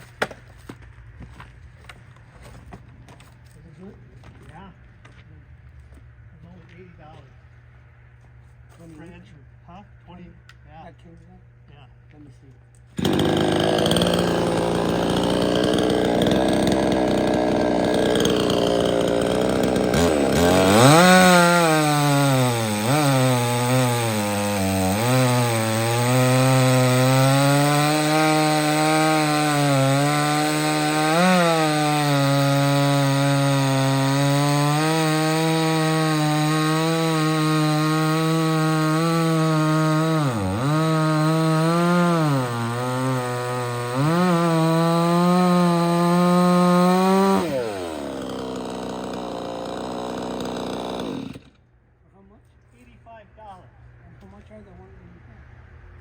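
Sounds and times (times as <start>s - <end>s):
chainsaw cutting log: 12.9s - 51.7s.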